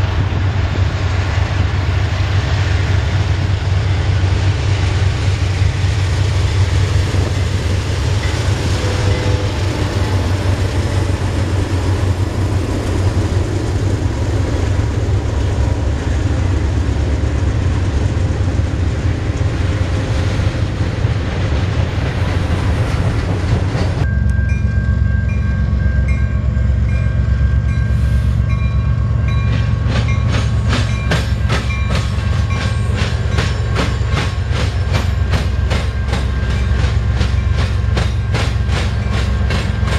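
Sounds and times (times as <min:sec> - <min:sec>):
freight train rumbling: 0:00.0 - 0:39.9
wheels clacking over rail joints: 0:29.4 - 0:39.9.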